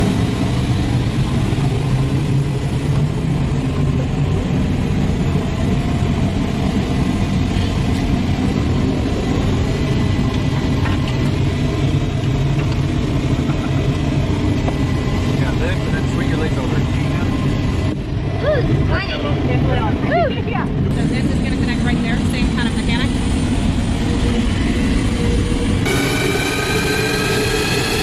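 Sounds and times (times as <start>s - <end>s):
engine rumbling: 0.0s - 28.0s
faint high whine: 23.7s - 28.0s.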